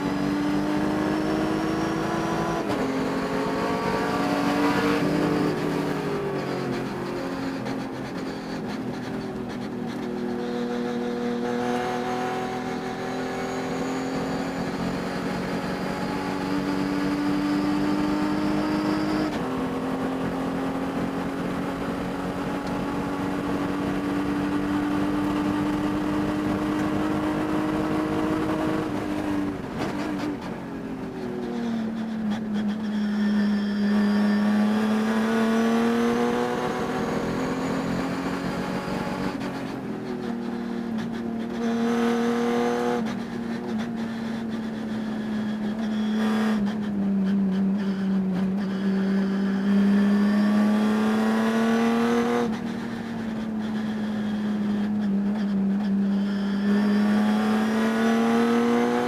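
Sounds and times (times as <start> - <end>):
race engine revving: 33.4 - 39.5, 48.0 - 55.4, 56.0 - 59.0.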